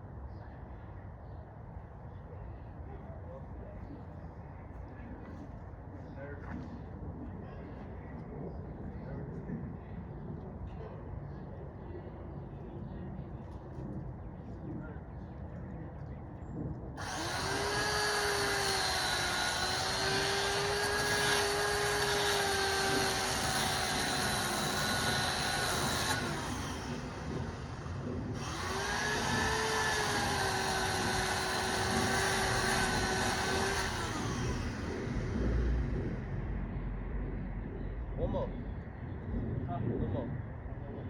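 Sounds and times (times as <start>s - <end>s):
chainsaw cutting wood: 17.0s - 36.0s.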